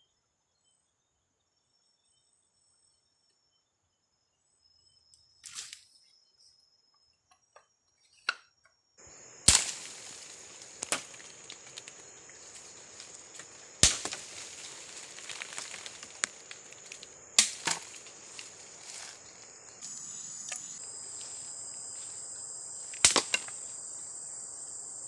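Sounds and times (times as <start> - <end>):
forest insects humming: 8.9 - 25.0
chopping into bamboo: 9.5 - 12.6, 13.4 - 19.2, 22.9 - 23.6.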